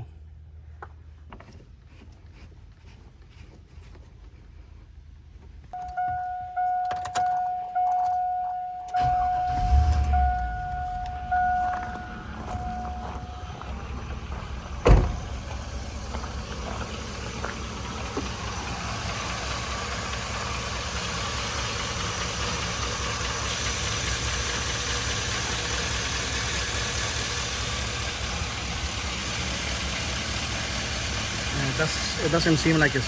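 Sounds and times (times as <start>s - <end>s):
pickup engine idling: 9.0s - 33.0s
loud thump: 14.4s - 15.5s.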